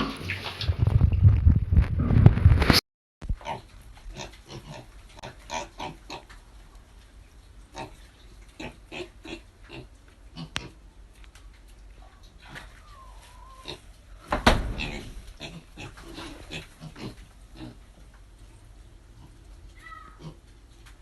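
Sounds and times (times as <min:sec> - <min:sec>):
pigs grunting: 0:03.4 - 0:06.3, 0:07.7 - 0:10.8, 0:12.0 - 0:20.8.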